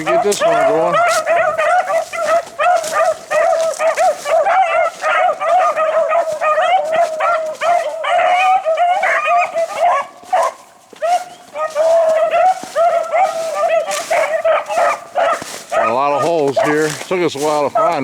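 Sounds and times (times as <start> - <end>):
beagles yipping and baying: 0.0 - 18.0.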